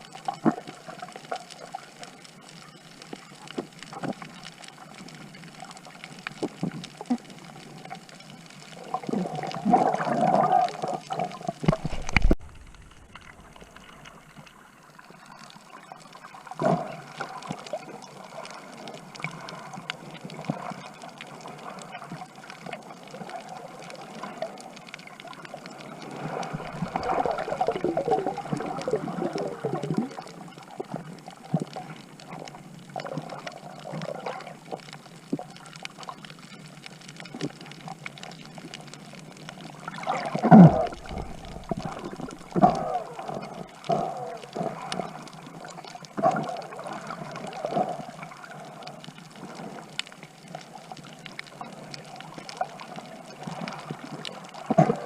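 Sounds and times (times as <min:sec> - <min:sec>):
water gurgling and sloshing: 0:03.2 - 0:55.0.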